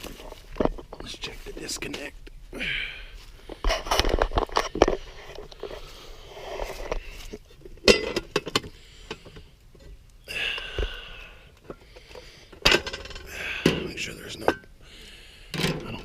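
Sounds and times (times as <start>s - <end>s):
metal box clicks and clunks: 7.8s - 8.7s, 12.6s - 13.8s, 15.5s - 16.0s.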